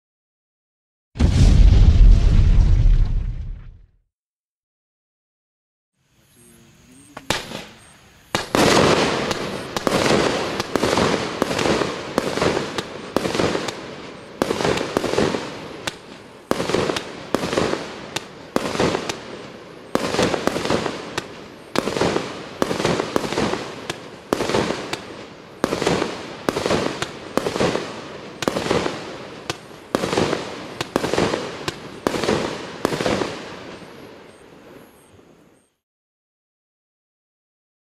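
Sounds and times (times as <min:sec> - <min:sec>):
firework shots banging: 0:07.2 - 0:33.6.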